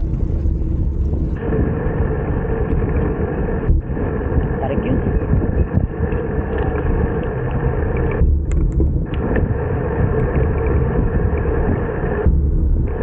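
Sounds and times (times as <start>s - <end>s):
wind rushing over microphone: 0.0s - 13.0s.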